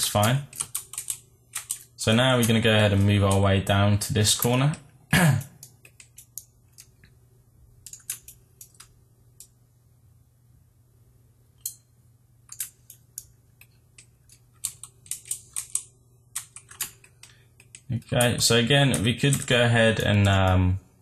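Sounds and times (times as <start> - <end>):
faint low hum: 0.0 - 21.0
keyboard and mouse clicking: 0.2 - 3.5, 5.5 - 7.1, 7.8 - 9.5, 12.5 - 20.6.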